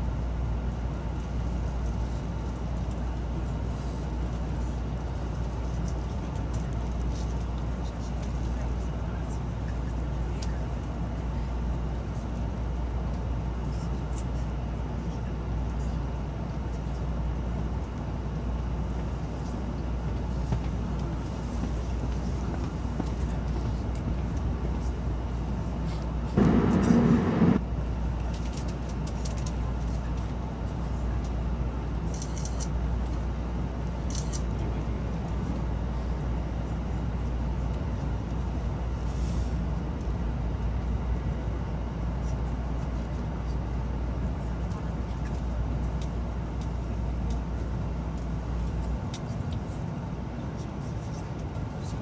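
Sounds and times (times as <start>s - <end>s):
train cabin low rumble: 0.0s - 52.0s
loud rushing burst: 26.4s - 27.6s.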